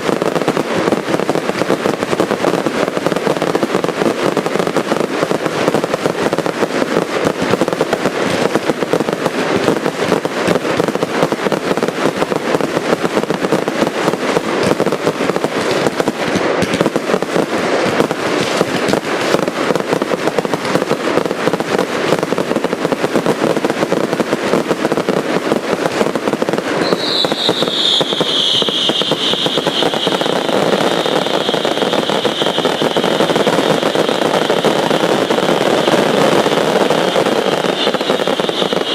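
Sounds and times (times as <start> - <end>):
fireworks crackling and popping: 0.0 - 38.9
shrill high firework whistle: 26.8 - 38.9.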